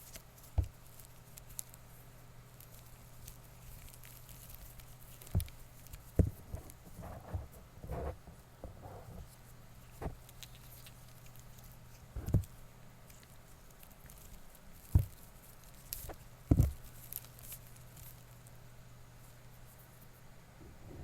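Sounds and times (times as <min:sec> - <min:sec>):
faint low hum: 0:00.0 - 0:21.0
microphone handling thumps: 0:06.2 - 0:09.3, 0:12.2 - 0:12.5, 0:15.0 - 0:15.2, 0:16.1 - 0:16.8.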